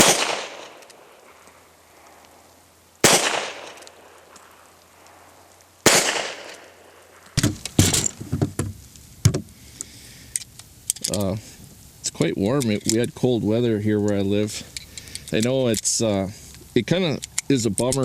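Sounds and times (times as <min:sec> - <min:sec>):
pistol shots with echo: 0:00.0 - 0:01.4, 0:03.0 - 0:05.2, 0:05.8 - 0:08.0
knocks and rustles: 0:07.3 - 0:09.5.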